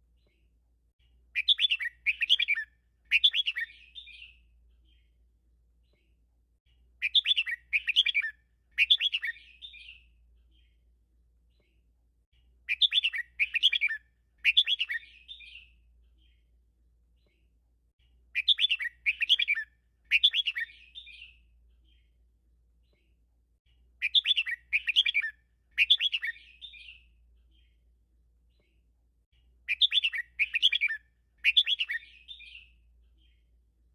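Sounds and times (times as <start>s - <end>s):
bird singing bubbly whistled notes: 7.0s - 9.9s, 12.7s - 15.5s, 18.4s - 21.2s, 24.0s - 27.0s, 29.7s - 32.6s.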